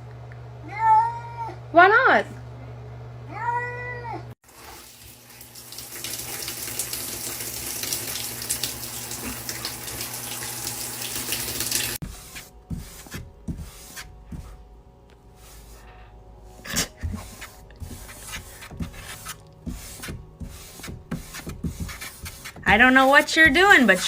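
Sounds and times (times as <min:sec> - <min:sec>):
cat meowing: 0:00.6 - 0:01.6, 0:03.3 - 0:04.3
water running: 0:04.4 - 0:12.0
soft knocks and scrapes: 0:16.9 - 0:24.0.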